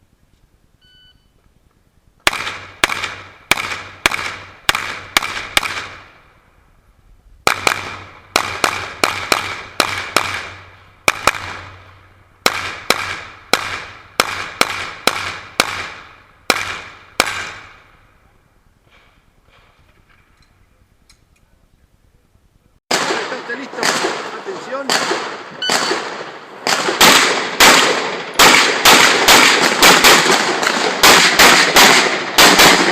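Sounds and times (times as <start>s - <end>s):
pistol shots: 2.2s - 6.2s, 7.4s - 17.9s, 22.9s - 32.9s.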